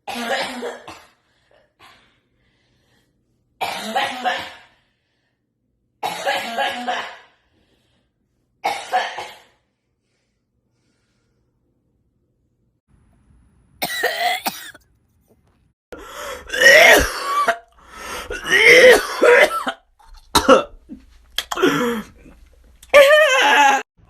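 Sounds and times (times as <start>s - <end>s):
person coughing and clearing throat: 0.0s - 1.2s, 3.6s - 4.7s, 6.0s - 7.3s, 8.6s - 9.6s, 13.8s - 14.8s, 16.0s - 22.4s.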